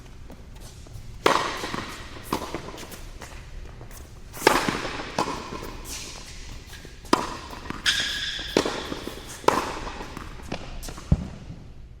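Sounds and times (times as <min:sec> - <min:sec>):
tennis ball hit by rackets: 0:01.2 - 0:03.4, 0:04.3 - 0:11.4
shoe squeak: 0:05.4 - 0:10.2.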